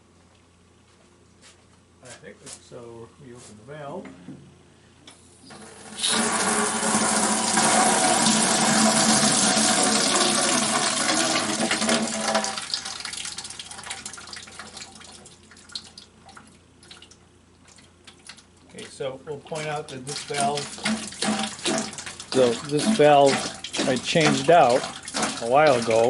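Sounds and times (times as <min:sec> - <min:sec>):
water rushing into a bucket: 0:05.6 - 0:18.5, 0:19.6 - 0:26.0
water trickling and dripping: 0:12.5 - 0:19.0, 0:19.6 - 0:26.0.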